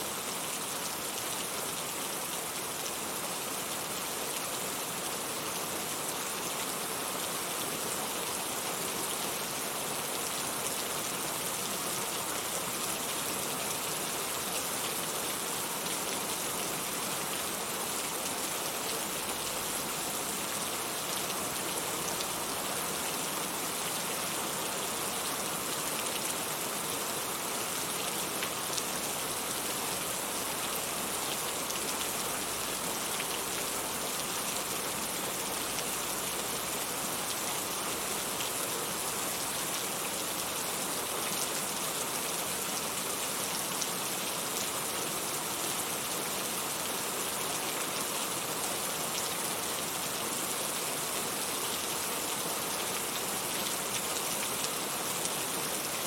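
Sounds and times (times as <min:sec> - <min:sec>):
heavy rain: 0:00.1 - 0:56.0.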